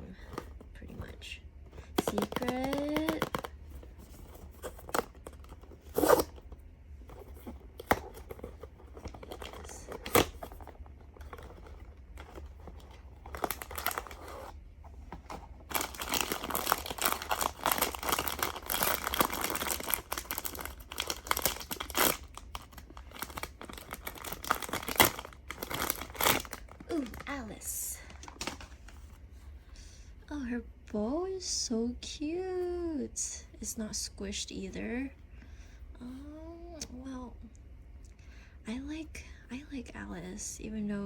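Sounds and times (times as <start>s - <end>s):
wrapper tearing and crinkling: 11.2s - 14.5s, 15.6s - 27.5s.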